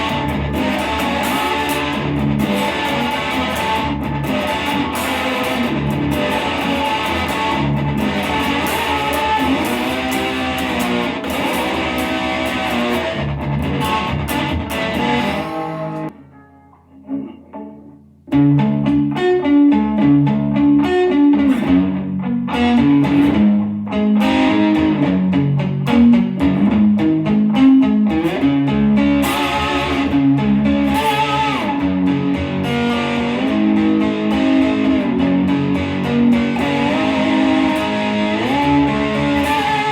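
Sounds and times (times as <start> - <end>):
lap steel guitar sliding notes: 0.0 - 17.8, 28.2 - 39.9.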